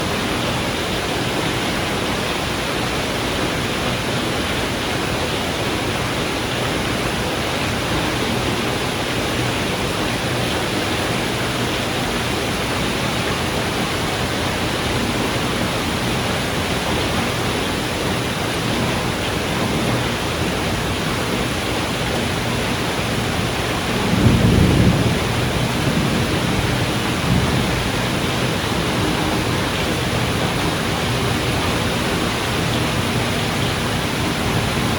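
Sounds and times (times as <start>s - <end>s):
steady rain: 0.0s - 34.9s
thunder rumbling: 22.2s - 34.9s.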